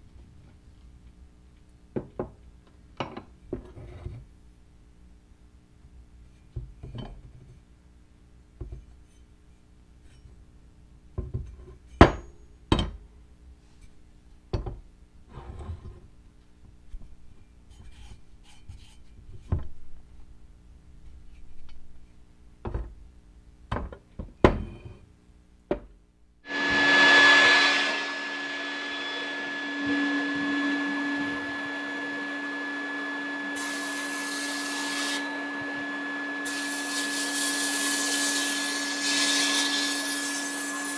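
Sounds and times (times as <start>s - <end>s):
shop machine whining: 26.5s - 40.9s.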